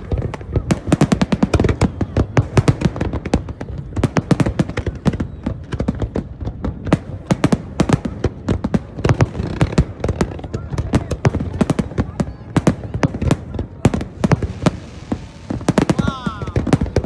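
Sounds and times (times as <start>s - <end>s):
fireworks cracking and banging: 0.0s - 17.0s.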